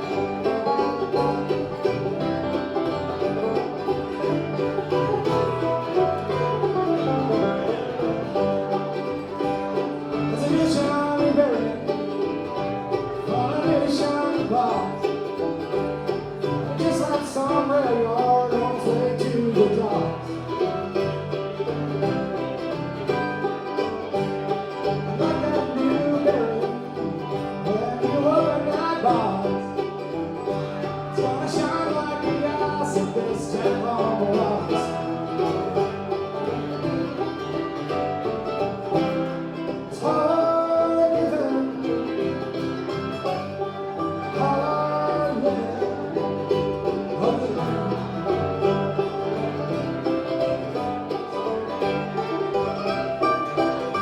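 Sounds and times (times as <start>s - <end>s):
banjo: 0.0s - 54.0s
bluegrass band playing: 0.0s - 54.0s.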